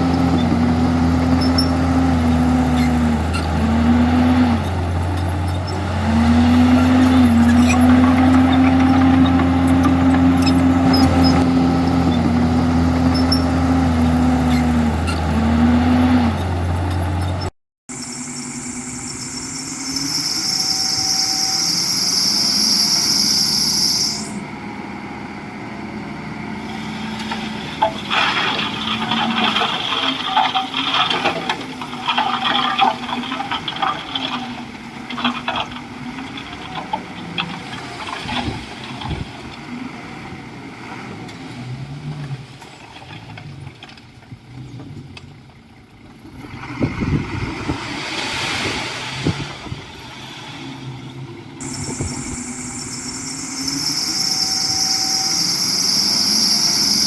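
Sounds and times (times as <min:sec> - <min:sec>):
heavy diesel engine under load: 0:00.0 - 0:57.0
steady high squeal: 0:17.9 - 0:24.4, 0:51.6 - 0:57.0
clattering and rattling: 0:27.8 - 0:39.3.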